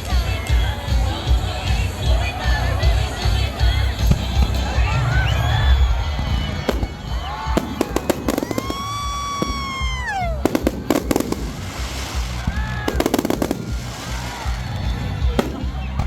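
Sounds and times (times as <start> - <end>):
fireworks popping and crackling: 3.9 - 16.0
high firework whistle: 4.7 - 16.0.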